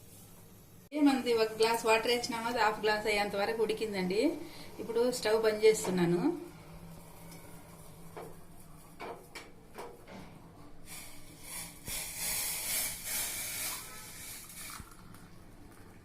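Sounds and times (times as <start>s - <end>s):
hot pan hissing: 10.9s - 15.0s.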